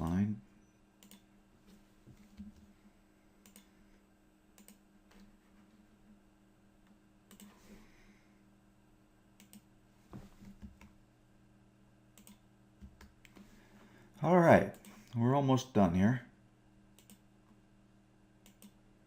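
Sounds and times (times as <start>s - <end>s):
low steady hum: 0.0s - 19.0s
keyboard clicks: 1.0s - 1.2s, 3.4s - 3.7s, 4.6s - 5.3s, 7.3s - 7.5s, 9.4s - 9.7s, 12.2s - 13.4s, 17.0s - 17.2s, 18.4s - 18.8s
computer mouse clicks: 1.0s - 1.3s, 3.4s - 3.7s, 4.6s - 5.3s, 7.3s - 7.6s, 9.4s - 9.7s, 12.2s - 13.5s, 17.0s - 17.2s, 18.4s - 18.8s.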